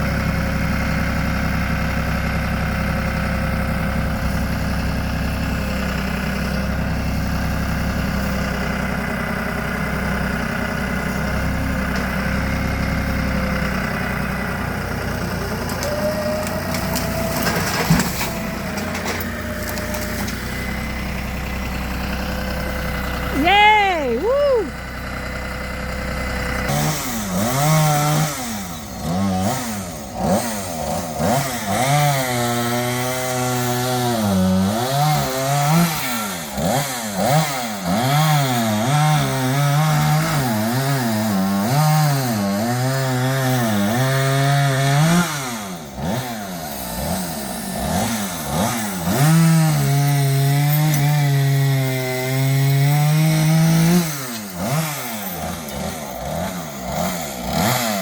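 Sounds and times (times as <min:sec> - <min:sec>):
chainsaw revving and cutting: 0:00.0 - 0:58.0.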